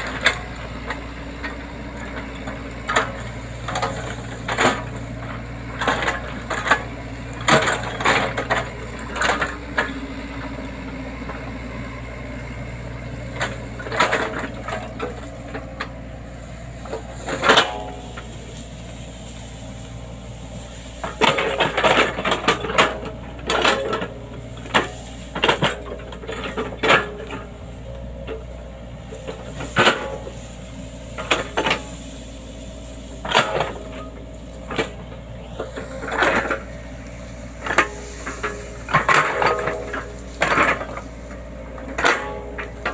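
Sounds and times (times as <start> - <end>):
excavator engine hum: 0.0 - 42.9
sharp metal clanks and knocks: 16.8 - 19.8, 20.6 - 27.5, 29.1 - 32.3, 33.0 - 42.9.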